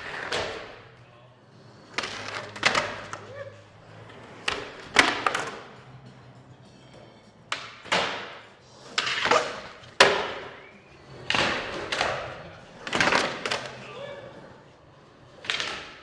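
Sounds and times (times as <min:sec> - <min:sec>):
skateboard grinding on concrete: 0:00.0 - 0:06.3, 0:08.5 - 0:16.0.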